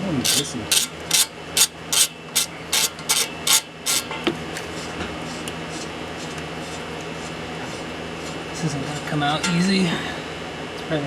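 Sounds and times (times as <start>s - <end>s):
ratchet wrench ratcheting: 0.0s - 4.2s
ratchet wrench click: 0.2s - 4.1s.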